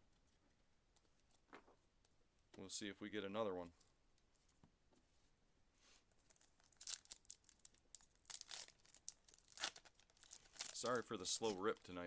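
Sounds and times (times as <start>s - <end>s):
wrapper tearing and crinkling: 6.3s - 12.0s.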